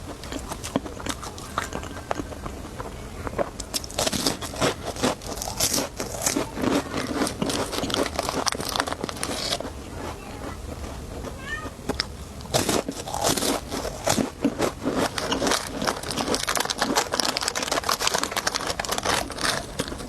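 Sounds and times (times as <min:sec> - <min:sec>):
plastic packaging crinkling: 0:12.5 - 0:20.0.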